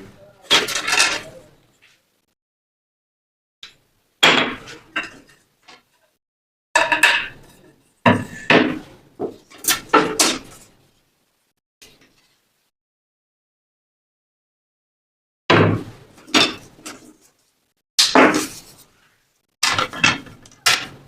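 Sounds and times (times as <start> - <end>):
knocks and clatters of tools: 0.0 - 2.0, 3.6 - 6.1, 6.8 - 10.8, 15.5 - 17.4, 19.6 - 21.0.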